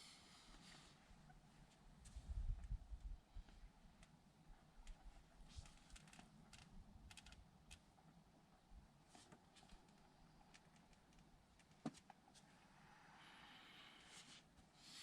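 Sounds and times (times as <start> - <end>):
faint clicks: 9.2 - 11.8.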